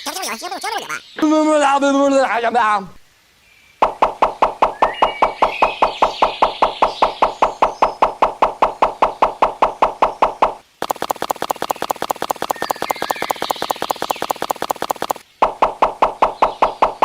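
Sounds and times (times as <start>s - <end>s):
small machine knocking: 3.8s - 17.0s.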